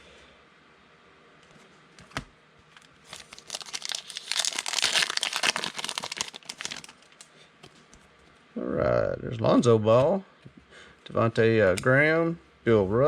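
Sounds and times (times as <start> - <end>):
wrapper tearing and crinkling: 3.0 - 7.2.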